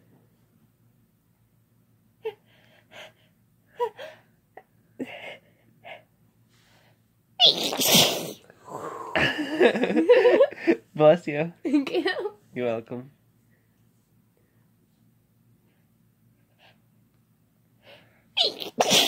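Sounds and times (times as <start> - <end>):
person sneezing: 7.4 - 9.2, 18.4 - 19.0.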